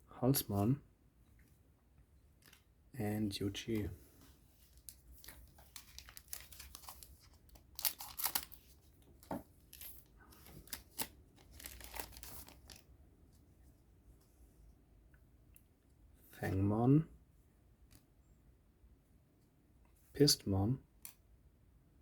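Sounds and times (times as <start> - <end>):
wrapper tearing and crinkling: 4.7 - 8.8, 9.7 - 12.8.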